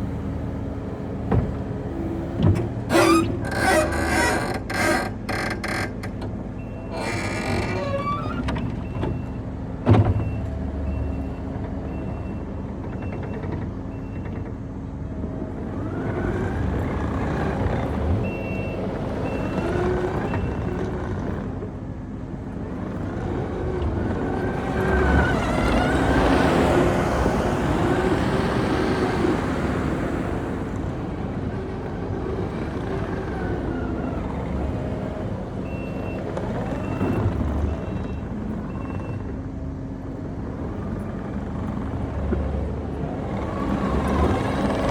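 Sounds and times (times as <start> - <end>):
diesel engine revving: 15.3 - 21.6, 22.5 - 38.8, 39.8 - 44.9.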